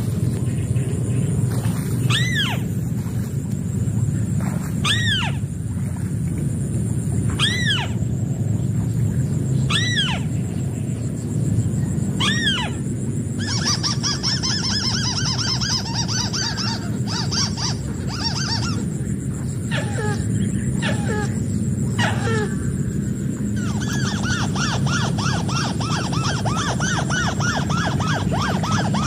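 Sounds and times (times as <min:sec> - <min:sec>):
steady low rumble: 0:00.0 - 0:29.0
bird calling nasal notes: 0:13.4 - 0:29.0.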